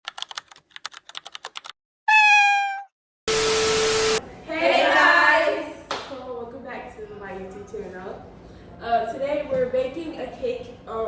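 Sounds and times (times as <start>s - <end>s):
cat meowing: 2.1s - 2.9s.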